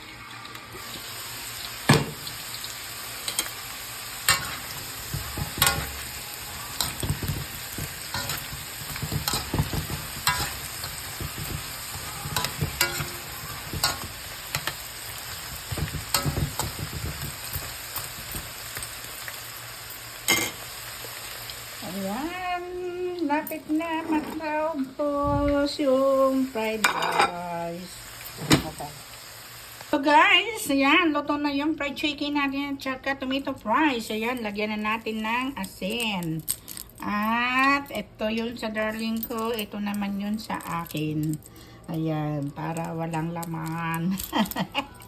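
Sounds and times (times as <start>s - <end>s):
food sizzling in hot oil: 0.0s - 31.1s, 42.5s - 45.0s
utensil scraping a pan: 4.3s - 18.4s.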